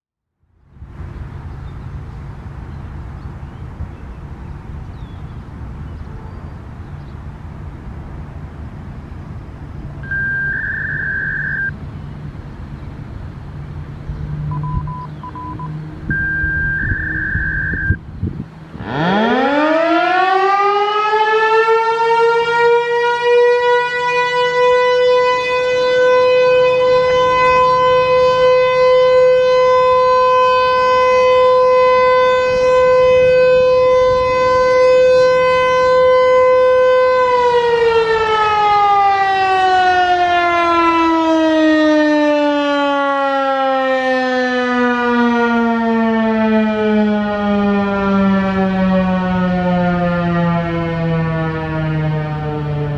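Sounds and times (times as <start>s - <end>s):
outdoor warning siren: 8.7s - 11.8s, 14.3s - 18.0s, 18.6s - 52.9s.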